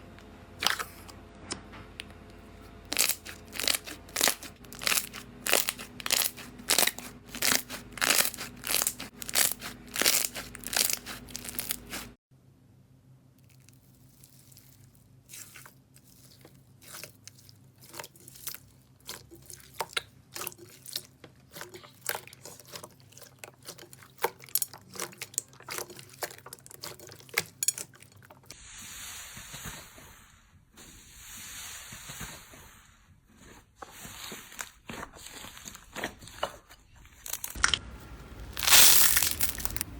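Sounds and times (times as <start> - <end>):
slime squishing: 0.6 - 1.1, 2.9 - 12.2, 13.4 - 28.6, 33.4 - 39.9
crunchy slime crackling: 2.9 - 12.2, 13.4 - 28.2, 37.1 - 39.9.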